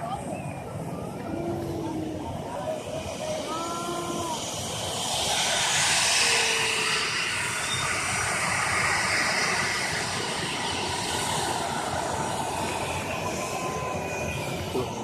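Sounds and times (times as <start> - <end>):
airplane engines rushing: 0.0 - 15.0
faint engine whine: 0.0 - 15.0.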